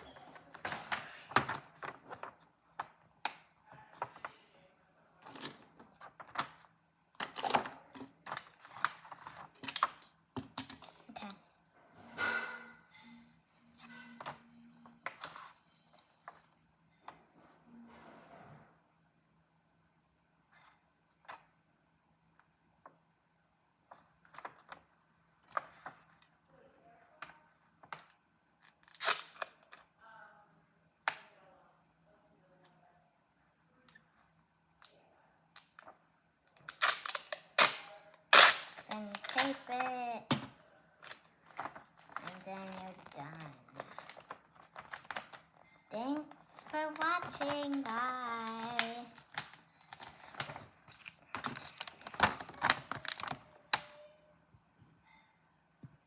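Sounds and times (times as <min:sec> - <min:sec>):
paper rustling: 0:00.0 - 0:03.0, 0:07.2 - 0:10.0, 0:41.0 - 0:54.0.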